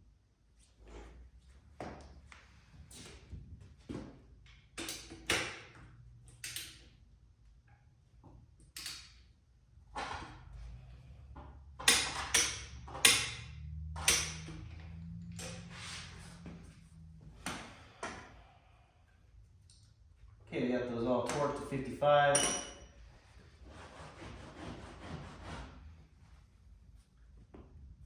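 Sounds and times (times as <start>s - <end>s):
metallic clicks of hand tools: 6.3s - 6.9s, 8.6s - 9.2s, 11.8s - 14.6s.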